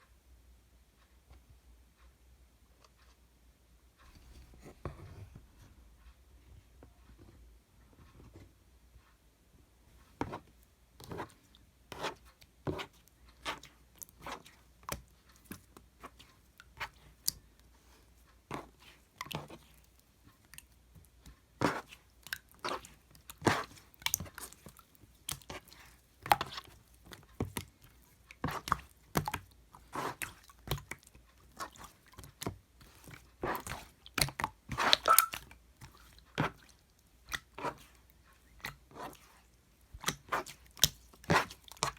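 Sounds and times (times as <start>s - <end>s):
hands squishing wet slime: 11.0s - 41.9s.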